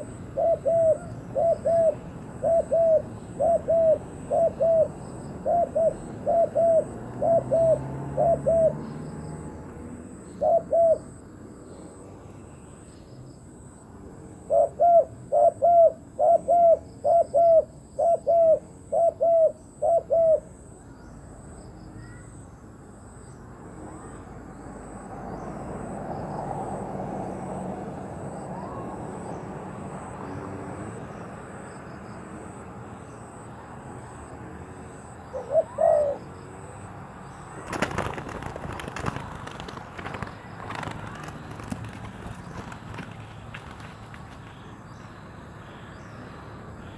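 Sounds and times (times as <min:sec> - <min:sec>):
dove cooing: 0:00.0 - 0:09.0, 0:10.3 - 0:11.2, 0:14.4 - 0:20.5, 0:35.3 - 0:36.4.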